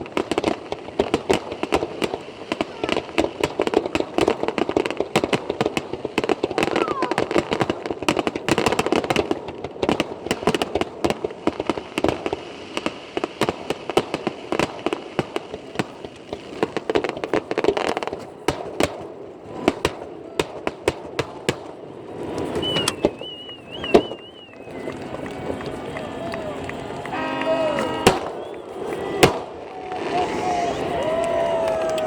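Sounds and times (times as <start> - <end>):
fireworks popping and crackling: 0.0 - 32.0
high wavering whistle: 22.5 - 25.6, 27.0 - 31.1.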